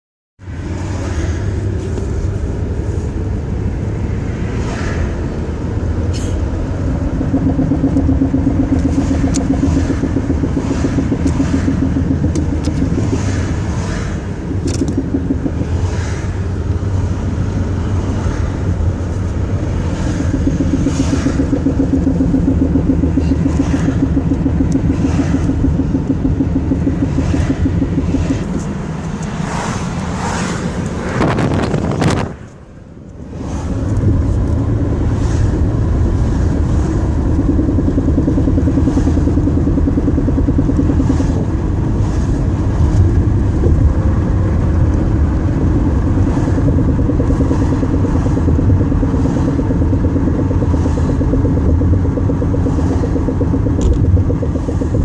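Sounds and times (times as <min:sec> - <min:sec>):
car road and drivetrain rumble: 0:00.4 - 0:55.0
droning hum: 0:00.4 - 0:55.0
clunks and knocks: 0:33.8 - 0:55.0.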